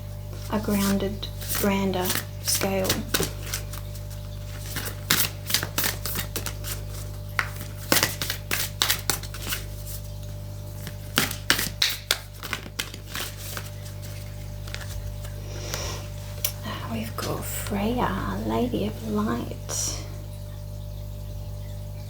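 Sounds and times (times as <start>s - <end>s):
steady low hum: 0.0s - 22.0s
cards being shuffled: 0.3s - 16.6s.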